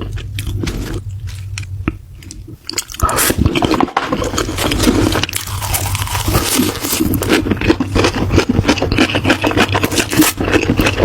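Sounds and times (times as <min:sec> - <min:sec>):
low hum: 0:00.0 - 0:09.8
chewing crunchy food: 0:00.0 - 0:11.0.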